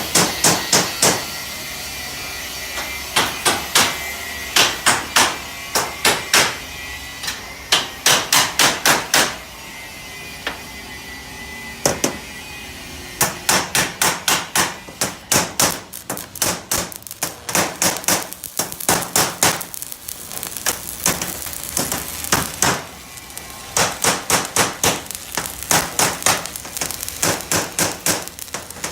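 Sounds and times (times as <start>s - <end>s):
hammer striking metal: 2.8s - 4.0s, 4.6s - 6.6s, 7.2s - 9.4s, 13.2s - 16.9s.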